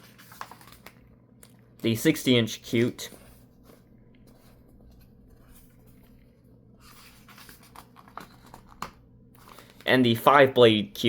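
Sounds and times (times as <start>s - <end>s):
paper rustling and clicking: 0.0s - 1.6s, 6.9s - 9.9s.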